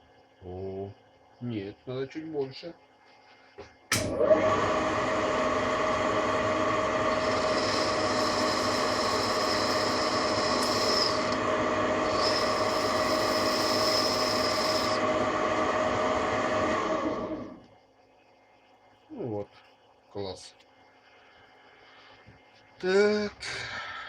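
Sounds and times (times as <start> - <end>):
lathe running: 3.9 - 17.6.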